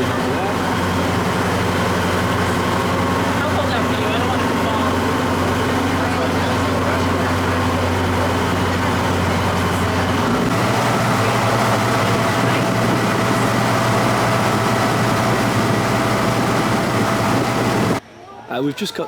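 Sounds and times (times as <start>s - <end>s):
boat engine running: 0.0s - 18.0s
water noise: 0.0s - 18.0s
wind noise: 8.9s - 18.0s.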